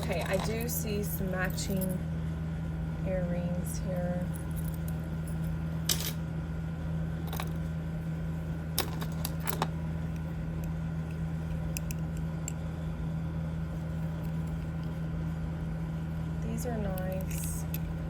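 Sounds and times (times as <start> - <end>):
metal jewelry clinking: 0.0 - 2.0, 4.2 - 6.2, 8.8 - 12.7, 16.8 - 17.9
steady low hum: 0.0 - 18.0.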